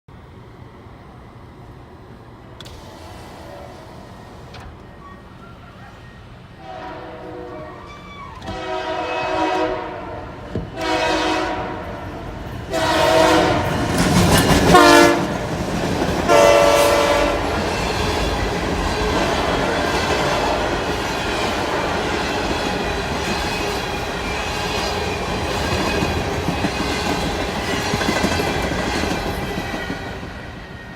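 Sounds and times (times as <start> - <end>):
train rumbling past: 0.1 - 30.9
locomotive horn blasts: 6.6 - 13.8, 14.7 - 15.4, 16.3 - 17.5
wheels clacking on rail joints: 12.3 - 30.9.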